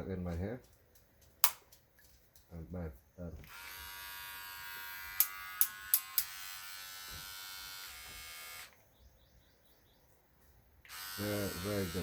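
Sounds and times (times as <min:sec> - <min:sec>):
sharp clicks: 0:01.0 - 0:01.8
pet clipper buzzing: 0:03.5 - 0:08.8, 0:10.9 - 0:12.0.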